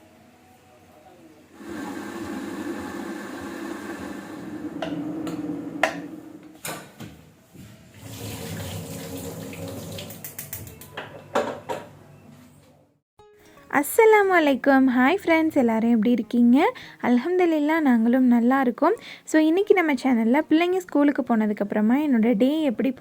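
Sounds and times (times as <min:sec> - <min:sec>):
tap running into sink: 0:08.1 - 0:10.7.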